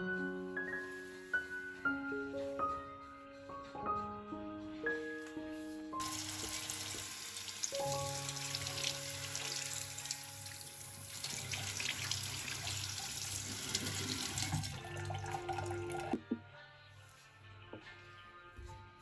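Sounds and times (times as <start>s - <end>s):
soft background music: 0.0s - 19.0s
tap water running into sink: 6.0s - 16.2s.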